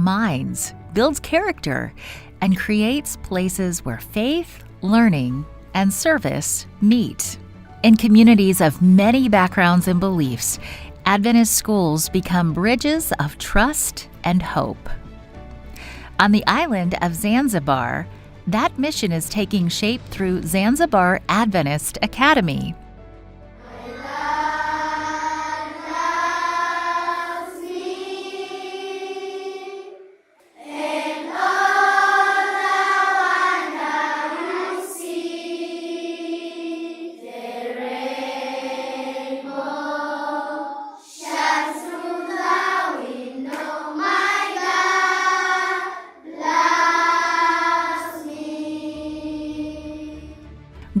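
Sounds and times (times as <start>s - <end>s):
children's choir singing: 23.6s - 50.5s.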